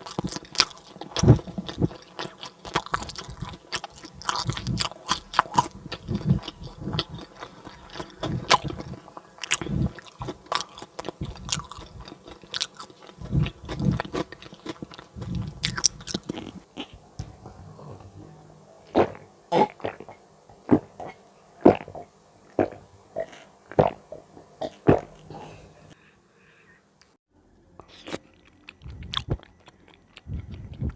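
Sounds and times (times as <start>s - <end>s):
crunchy chewing: 0.0s - 17.0s, 27.8s - 30.9s.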